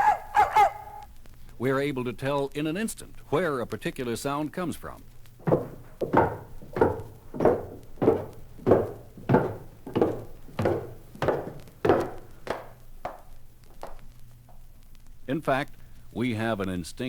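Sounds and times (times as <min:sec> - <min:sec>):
footsteps on hard floor: 0:05.4 - 0:14.6.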